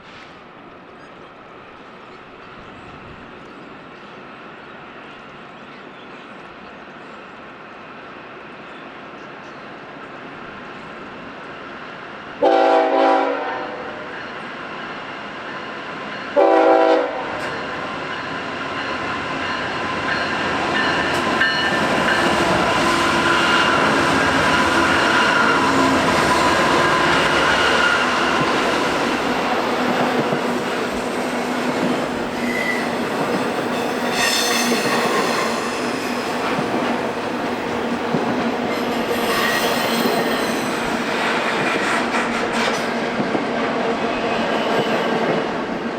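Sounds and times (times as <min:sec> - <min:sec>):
freight train passing: 0:00.0 - 0:45.9
locomotive air horn blasts: 0:12.4 - 0:14.0, 0:16.4 - 0:17.5
high wheel squeals: 0:32.1 - 0:37.1, 0:38.7 - 0:41.2.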